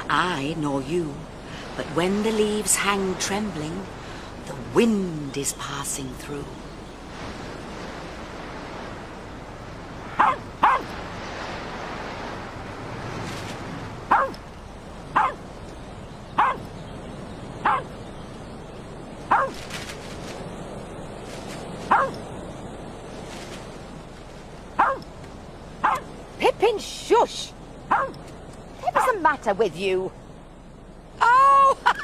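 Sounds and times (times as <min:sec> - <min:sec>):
steady background noise: 0:00.0 - 0:32.0
dog barking: 0:10.2 - 0:10.9, 0:14.1 - 0:14.4, 0:15.2 - 0:15.4, 0:16.4 - 0:16.7, 0:17.6 - 0:17.9, 0:19.3 - 0:19.6, 0:21.9 - 0:22.2, 0:24.8 - 0:25.1, 0:25.8 - 0:26.1, 0:27.9 - 0:28.2.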